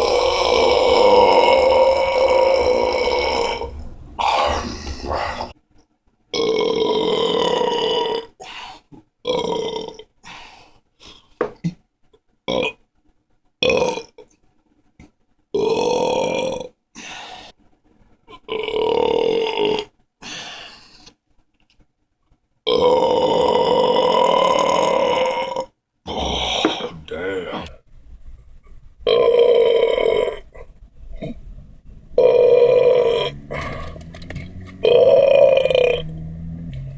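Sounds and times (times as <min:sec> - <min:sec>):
person burping: 0:00.0 - 0:05.5, 0:06.4 - 0:08.3, 0:09.2 - 0:10.1, 0:12.5 - 0:12.8, 0:13.6 - 0:14.2, 0:22.7 - 0:27.8, 0:29.0 - 0:31.5, 0:32.2 - 0:34.0, 0:34.8 - 0:36.2.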